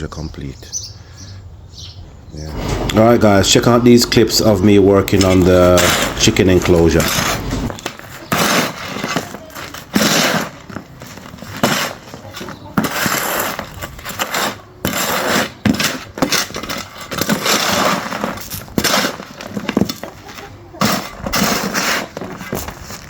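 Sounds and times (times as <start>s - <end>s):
hand tool crunching and scraping: 2.5s - 23.0s.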